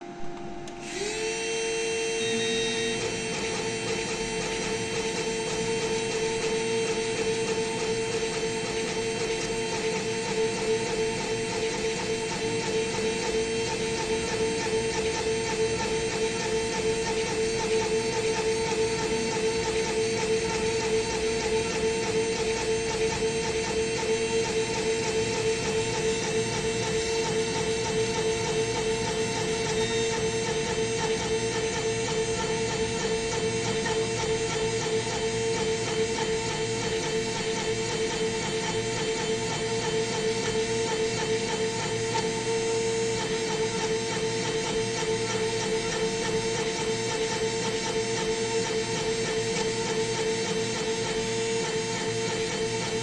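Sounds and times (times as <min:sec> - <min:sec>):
machine spindle whining: 0:00.0 - 0:10.1.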